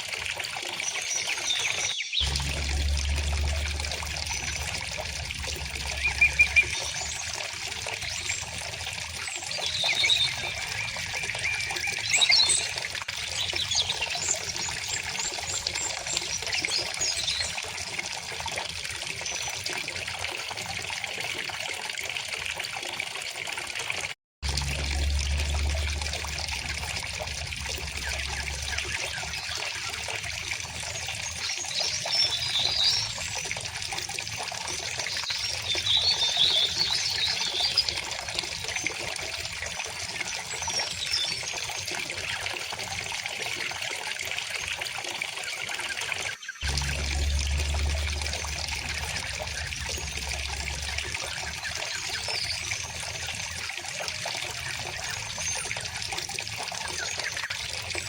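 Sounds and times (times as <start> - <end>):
low rumble: 2.2 - 8.6, 24.4 - 30.8, 46.6 - 52.2
river water flowing: 2.2 - 12.5, 24.4 - 34.0, 46.6 - 56.5.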